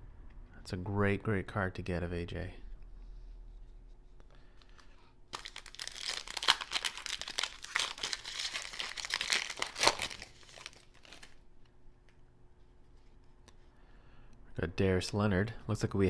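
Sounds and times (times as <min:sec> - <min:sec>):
plastic wrapper crinkling: 0:04.6 - 0:11.5.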